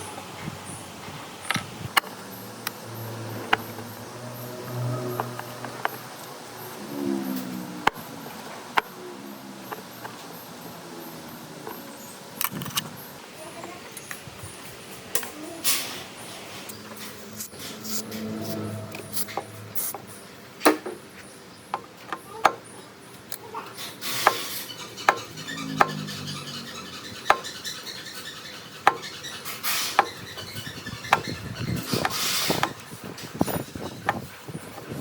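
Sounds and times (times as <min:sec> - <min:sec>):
metal parts clinking and knocking: 0:12.4 - 0:13.0
metal scraping: 0:15.6 - 0:20.6.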